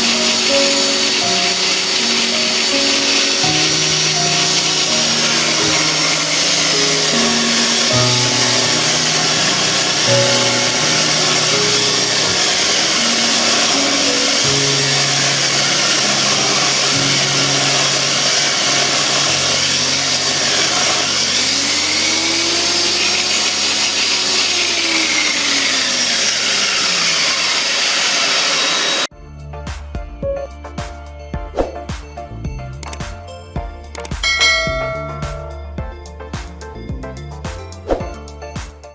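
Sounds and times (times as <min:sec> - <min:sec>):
background music: 0:00.0 - 0:25.8, 0:29.0 - 0:38.9
disc sander sanding wood: 0:00.0 - 0:29.1.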